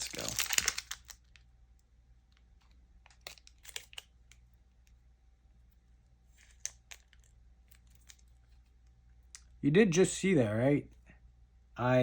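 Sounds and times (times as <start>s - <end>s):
soft card rustle: 0.0s - 1.5s, 2.3s - 5.0s, 5.7s - 9.5s.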